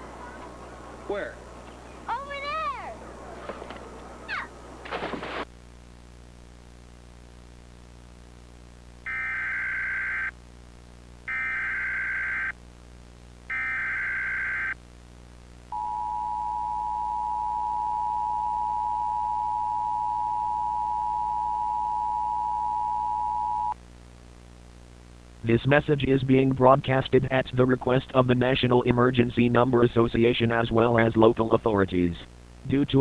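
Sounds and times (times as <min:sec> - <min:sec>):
two-tone attention signal: 0:15.8 - 0:23.8.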